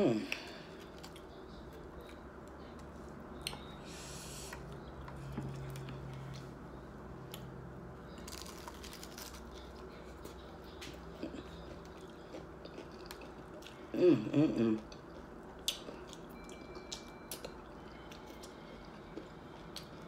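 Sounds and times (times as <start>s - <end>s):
faint low hum: 0.0s - 20.0s
taco shell crunching: 8.1s - 13.8s
quiet chewing: 8.1s - 14.0s, 14.8s - 20.0s.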